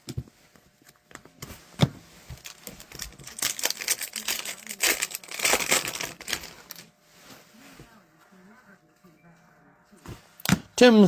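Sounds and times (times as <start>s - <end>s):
wrapper crinkling: 2.3s - 6.9s.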